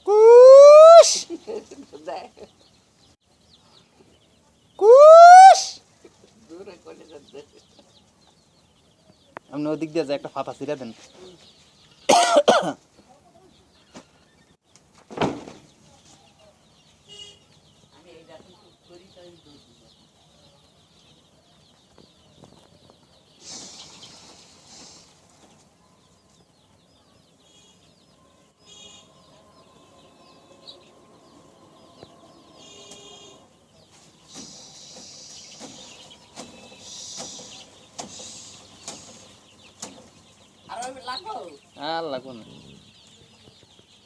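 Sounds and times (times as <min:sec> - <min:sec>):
chickens squawking: 0:00.0 - 0:02.6, 0:04.8 - 0:07.9, 0:28.6 - 0:43.6
chickens clucking and chirping: 0:00.0 - 0:44.0.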